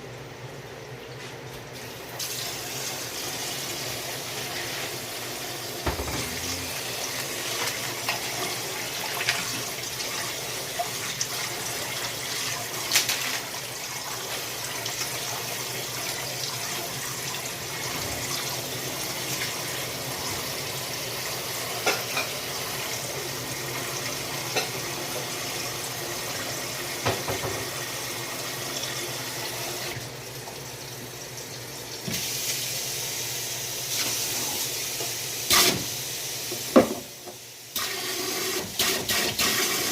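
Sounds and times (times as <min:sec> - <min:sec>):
tap water running into sink: 0:01.6 - 0:32.6, 0:33.9 - 0:39.9.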